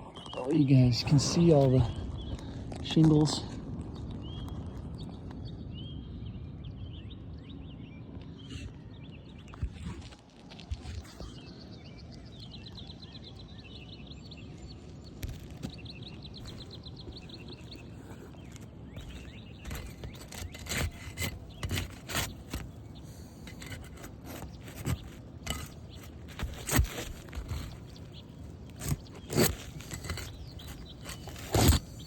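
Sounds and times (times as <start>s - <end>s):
outdoor background noise: 0.0s - 32.0s
tool scraping on roof shingles: 16.4s - 32.0s.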